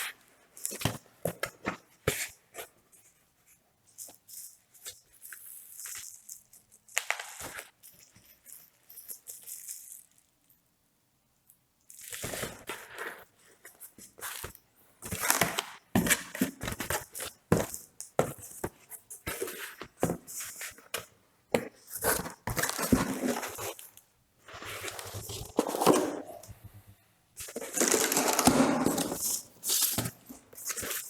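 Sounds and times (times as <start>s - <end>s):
packaging rustling and crinkling: 21.9s - 26.6s.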